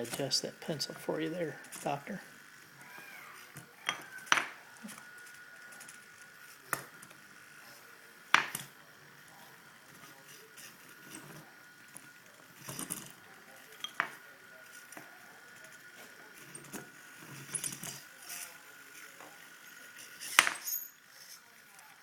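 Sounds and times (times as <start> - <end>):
robot arm servo whine: 2.6 - 6.6.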